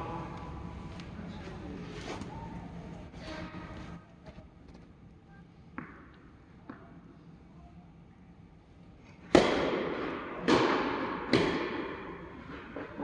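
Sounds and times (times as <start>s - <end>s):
tennis balls struck by rackets: 9.3s - 13.0s.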